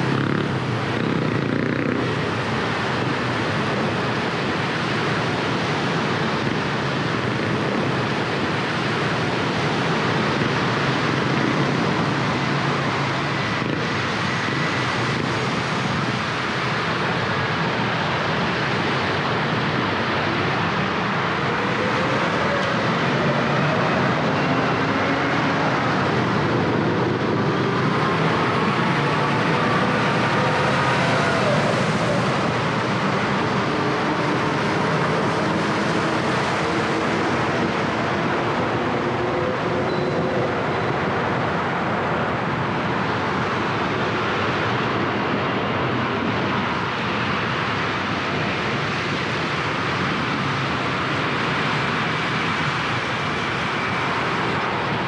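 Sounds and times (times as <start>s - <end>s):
vehicle engine speeding up: 21.6s - 40.5s.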